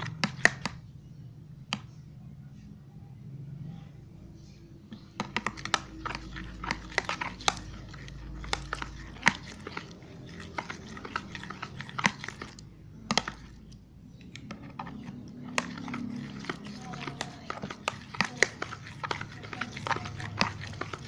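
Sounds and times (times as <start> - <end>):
spoon stirring sticky slime: 0.0 - 2.4, 4.3 - 21.0.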